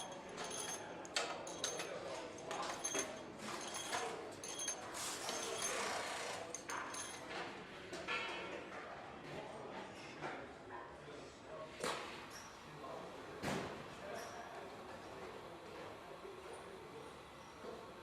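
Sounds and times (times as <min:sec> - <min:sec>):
metallic clicks and clinks: 0:00.0 - 0:07.4.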